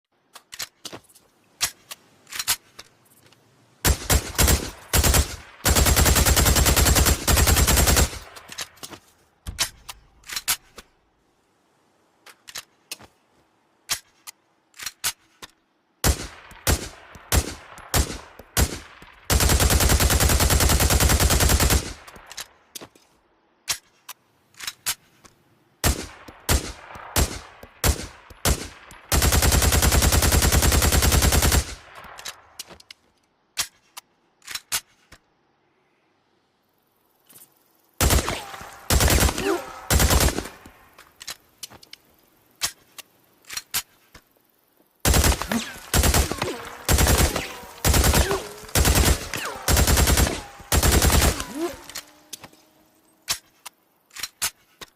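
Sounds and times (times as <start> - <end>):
submachine gun firing: 3.8 - 8.5, 16.0 - 22.3, 25.8 - 32.4, 38.0 - 40.7, 45.0 - 52.3.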